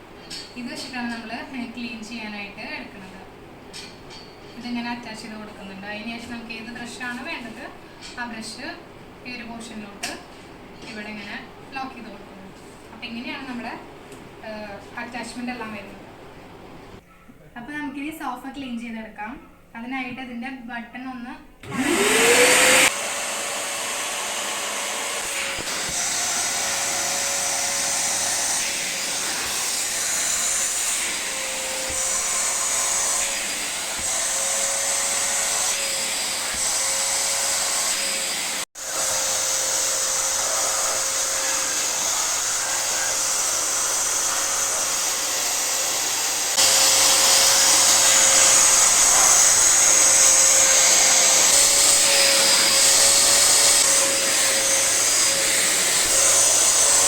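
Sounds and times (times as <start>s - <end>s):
vacuum cleaner running: 21.6s - 57.0s.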